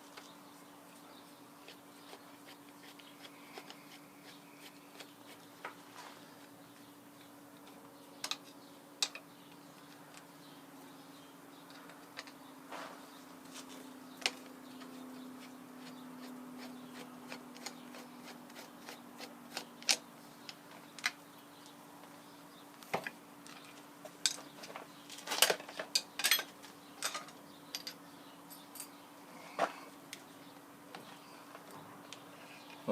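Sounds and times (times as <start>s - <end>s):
metal parts and tools clinking: 25.3s - 28.0s.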